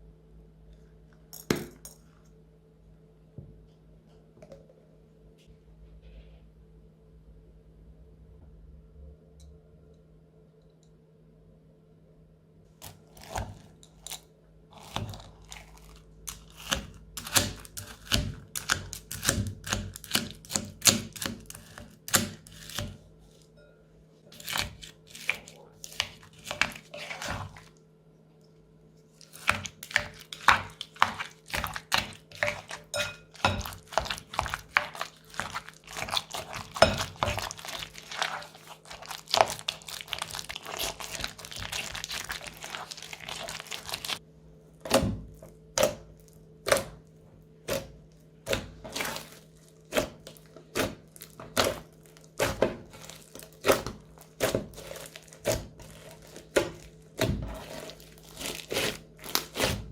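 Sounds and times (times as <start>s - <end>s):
crunchy slime crackling and popping: 12.8s - 22.8s, 29.2s - 44.2s, 47.7s - 59.9s.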